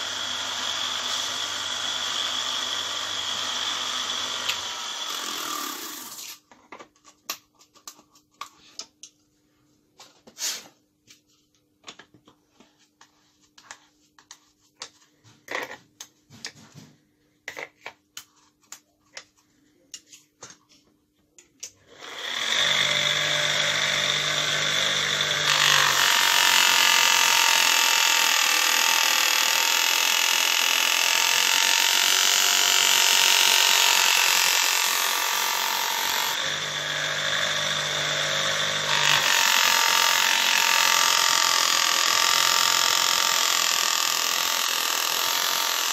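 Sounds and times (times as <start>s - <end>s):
electric knife sharpener grinding: 0.0s - 6.4s, 21.9s - 45.9s.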